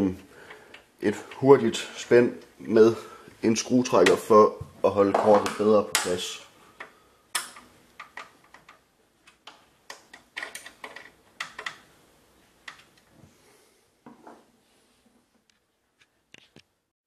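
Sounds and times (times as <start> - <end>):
thumbscrews clicking on metal bracket: 6.8 - 11.9.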